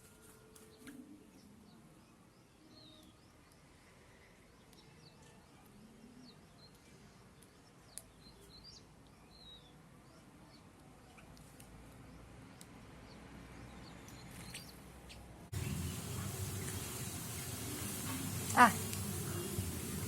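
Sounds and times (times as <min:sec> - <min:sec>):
low steady hiss: 0:15.3 - 0:20.0.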